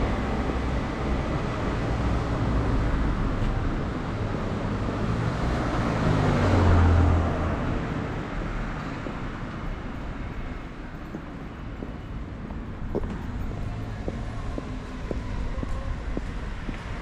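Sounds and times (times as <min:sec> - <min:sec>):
passing cars rumble: 0:00.0 - 0:17.0
wind buffeting microphone: 0:11.8 - 0:17.0.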